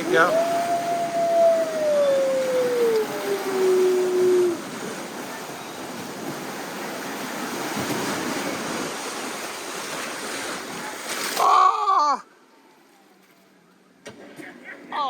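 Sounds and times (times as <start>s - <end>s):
rushing splashing river water: 0.0s - 11.8s
person crying out: 0.3s - 4.6s.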